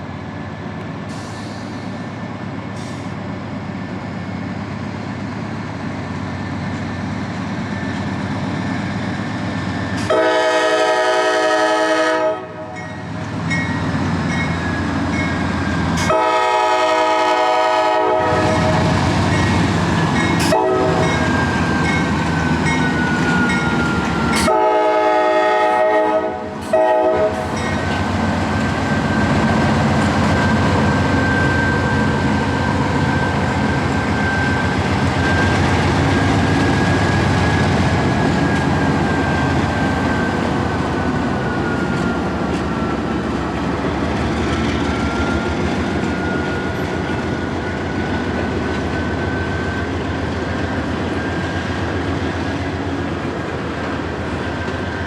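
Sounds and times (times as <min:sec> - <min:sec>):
diesel locomotive rumble and whine: 0:00.0 - 0:55.0
locomotive horn: 0:10.0 - 0:12.8, 0:16.0 - 0:19.0, 0:20.4 - 0:21.4, 0:24.3 - 0:27.6.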